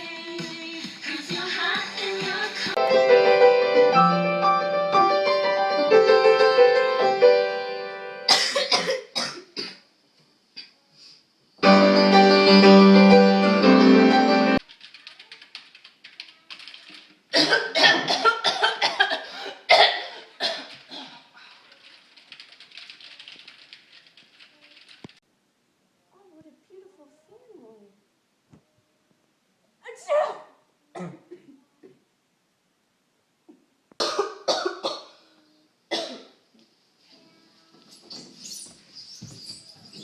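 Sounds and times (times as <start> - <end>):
person coughing: 8.3 - 9.8, 17.3 - 21.3, 33.5 - 35.2, 35.9 - 36.4
music with stepped notes: 11.6 - 14.6.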